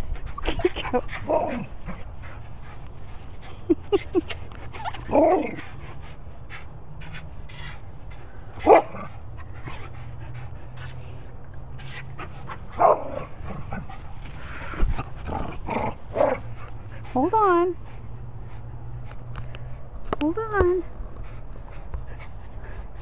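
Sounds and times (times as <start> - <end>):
dog barking: 8.6 - 8.9.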